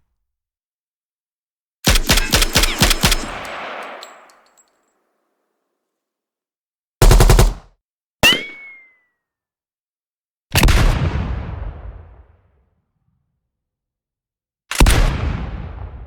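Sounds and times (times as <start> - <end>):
automatic gunfire bursts: 1.9 - 4.3, 7.0 - 7.7.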